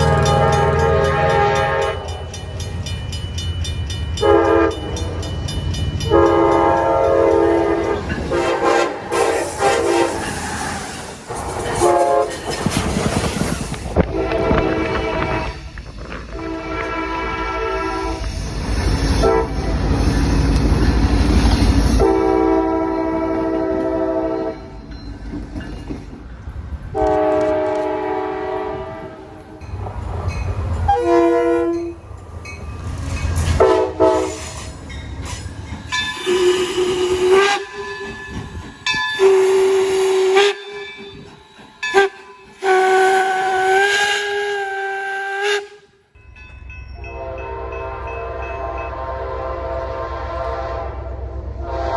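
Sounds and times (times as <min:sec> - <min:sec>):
train air horn blasts: 0:00.0 - 0:02.3, 0:04.2 - 0:05.0, 0:06.0 - 0:10.7, 0:11.3 - 0:13.1, 0:13.9 - 0:18.4, 0:19.0 - 0:20.0, 0:21.9 - 0:24.7, 0:26.9 - 0:29.6, 0:30.9 - 0:32.0, 0:33.5 - 0:34.7, 0:36.2 - 0:37.9, 0:39.2 - 0:41.2, 0:41.8 - 0:46.0, 0:47.0 - 0:51.9
train rumbling past: 0:00.0 - 0:51.9.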